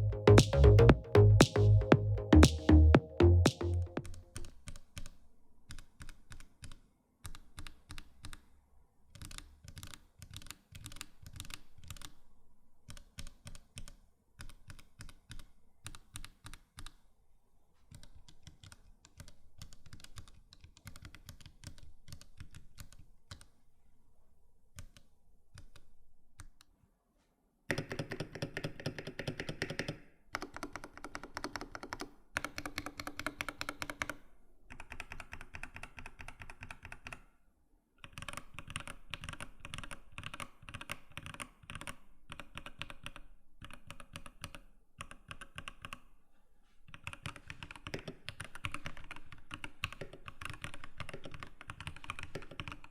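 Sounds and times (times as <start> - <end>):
mechanical keyboard typing: 27.7 - 37.2, 38.0 - 46.0, 46.9 - 52.9.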